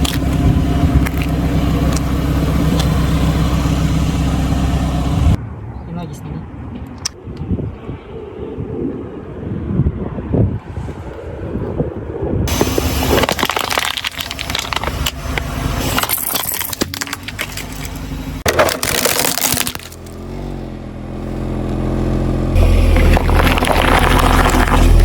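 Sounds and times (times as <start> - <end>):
objects crunching under car: 0.0 - 3.5, 12.5 - 20.5, 22.5 - 25.0
car engine running: 0.0 - 5.4, 12.5 - 25.0.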